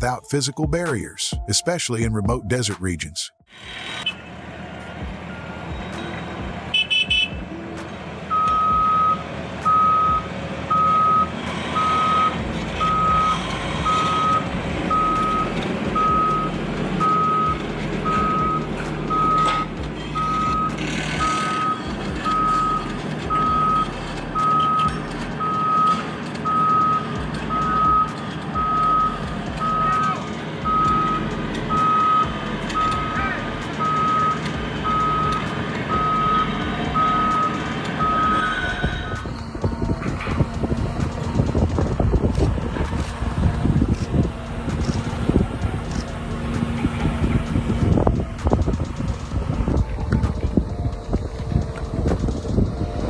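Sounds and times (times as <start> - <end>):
heavy vehicle engine rumble: 3.5 - 53.0
reversing alarm beeping: 8.3 - 39.9.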